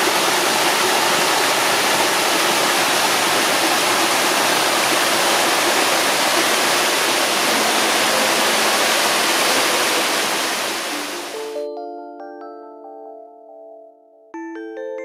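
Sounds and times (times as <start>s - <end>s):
waterfall pouring: 0.0s - 11.4s.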